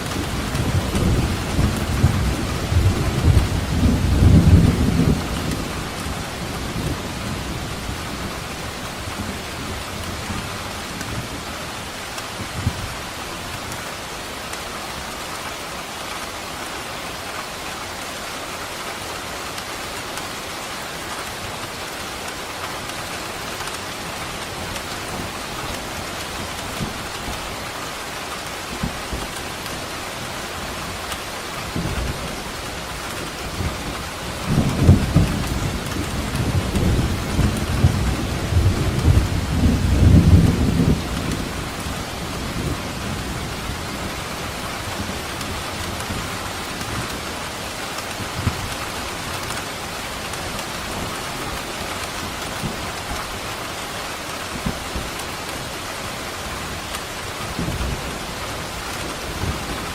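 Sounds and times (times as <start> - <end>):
rolling thunder rumble: 0.0 - 11.4, 31.6 - 47.3
heavy rain falling: 0.0 - 59.9.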